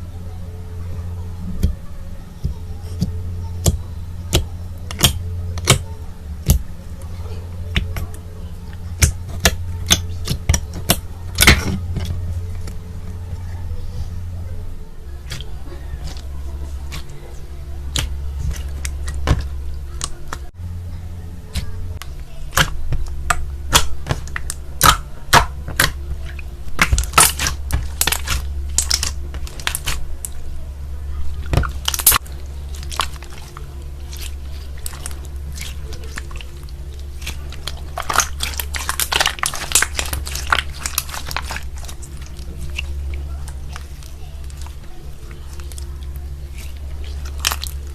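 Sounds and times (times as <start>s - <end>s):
steady low hum: 0.0s - 47.9s
slime squeezed crackling pops: 22.5s - 30.3s, 31.4s - 47.9s.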